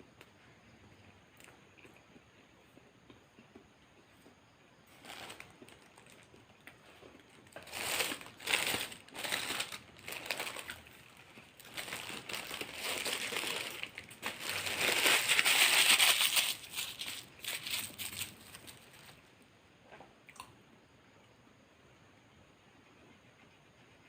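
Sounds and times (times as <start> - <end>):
paper wrapper crinkling: 5.0 - 6.3, 7.4 - 19.2.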